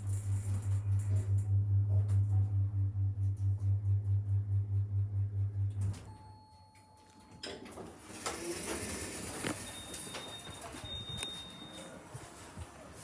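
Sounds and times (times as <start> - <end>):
sliding lift doors opening: 7.8 - 12.5.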